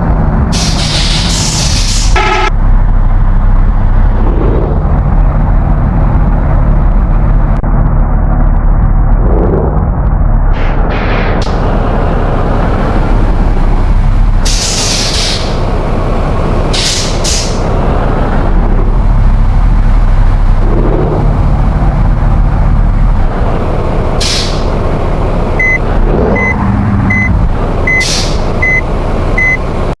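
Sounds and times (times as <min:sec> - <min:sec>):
bus engine running: 0:00.0 - 0:30.0
compressed air hiss: 0:00.5 - 0:02.2, 0:14.4 - 0:15.6, 0:16.7 - 0:17.6, 0:24.2 - 0:24.7, 0:28.0 - 0:28.5
high beeps: 0:25.6 - 0:25.8, 0:26.4 - 0:27.3, 0:27.9 - 0:28.8, 0:29.4 - 0:29.6.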